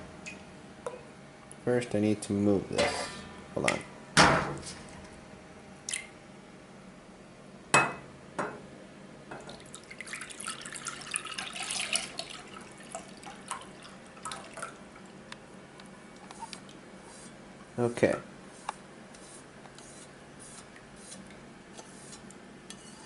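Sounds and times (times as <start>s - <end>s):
liquid pouring into bowl: 9.5s - 15.2s.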